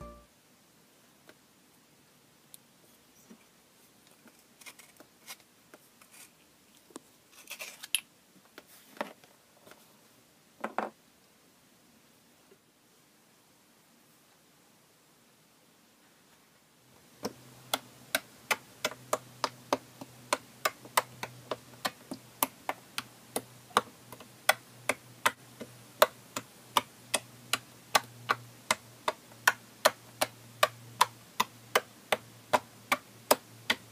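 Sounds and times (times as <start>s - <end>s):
faint low hum: 0.0s - 5.0s.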